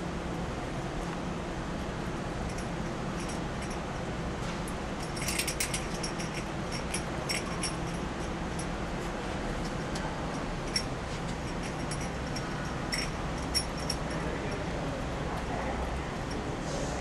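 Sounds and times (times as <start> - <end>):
low room hum: 0.0 - 17.0
metallic jingling and clicking: 2.5 - 3.8, 5.0 - 8.8, 9.6 - 14.7.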